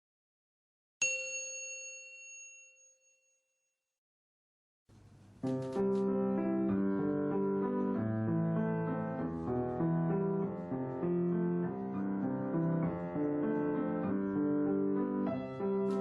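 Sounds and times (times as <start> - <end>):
piano or keyboard chords: 5.4 - 16.0.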